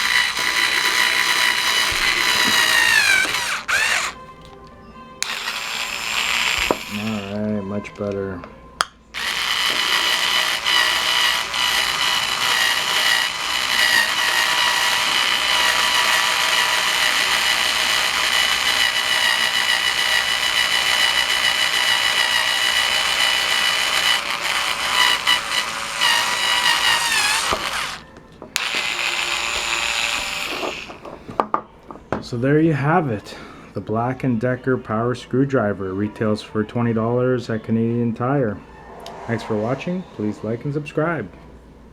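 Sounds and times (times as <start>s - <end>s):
power screwdriver whirring: 0.0s - 4.2s, 5.2s - 8.2s, 9.2s - 31.1s.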